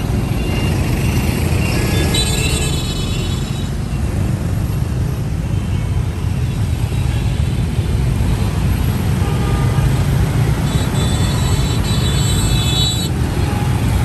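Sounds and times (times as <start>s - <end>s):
traffic engine rumble: 0.0s - 14.0s.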